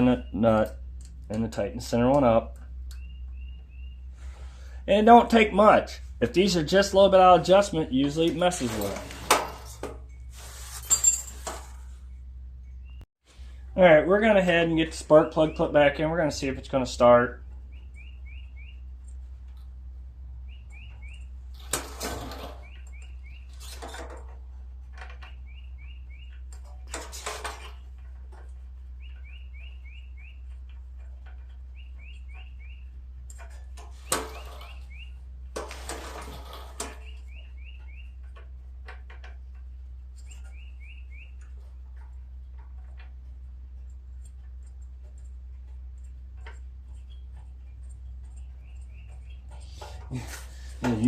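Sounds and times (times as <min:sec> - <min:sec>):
bird chirping: 0:02.6 - 0:04.6, 0:12.0 - 0:13.1, 0:17.3 - 0:19.3, 0:20.4 - 0:21.5, 0:22.5 - 0:23.7, 0:25.1 - 0:26.9, 0:27.7 - 0:35.3, 0:36.9 - 0:38.4, 0:39.6 - 0:42.5, 0:43.7 - 0:51.0
metal hand tools clanking: 0:06.3 - 0:10.0, 0:10.7 - 0:11.8, 0:46.3 - 0:51.0.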